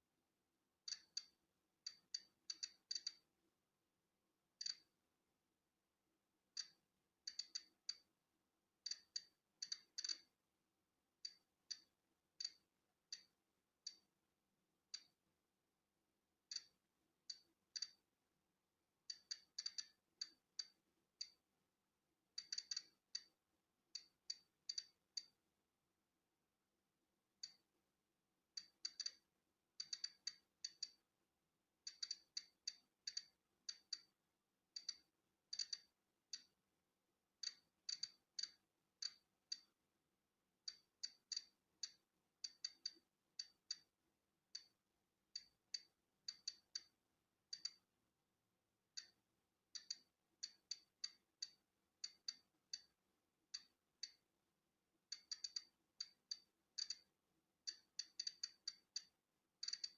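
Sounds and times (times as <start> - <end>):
geiger counter clicking: 0.9 - 3.3, 4.6 - 4.9, 6.6 - 8.1, 8.8 - 10.3, 11.2 - 14.1, 15.0 - 15.2, 16.5 - 18.0, 19.1 - 21.4, 22.4 - 23.4, 24.0 - 25.4, 27.4 - 27.7, 28.6 - 31.0, 31.9 - 34.1, 34.7 - 36.5, 37.4 - 39.7, 40.6 - 43.9, 44.5 - 44.7, 45.3 - 47.8, 49.0 - 54.2, 55.1 - 59.9.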